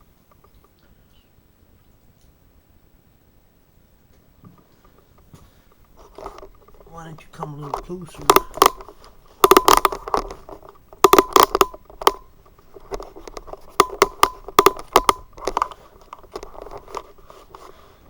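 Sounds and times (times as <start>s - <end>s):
objects handled near microphone: 4.2s - 18.0s.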